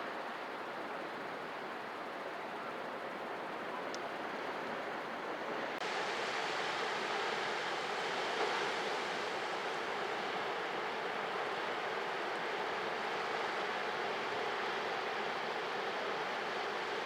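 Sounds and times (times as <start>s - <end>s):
sea surf washing ashore: 5.8s - 17.0s.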